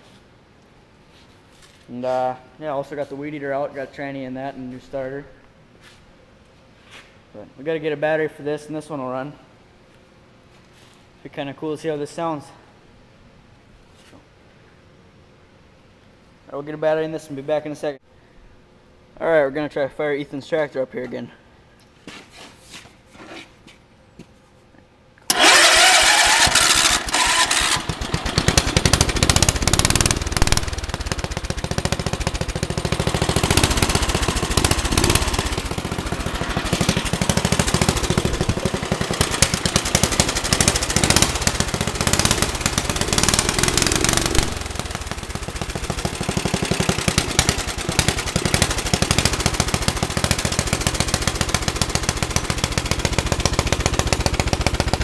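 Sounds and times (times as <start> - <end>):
riding mower engine choppy exhaust: 25.3 - 55.0.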